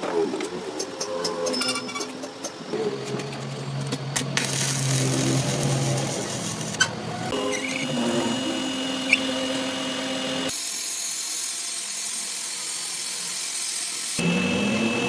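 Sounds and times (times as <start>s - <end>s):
power tool whine and hum: 3.6s - 15.0s.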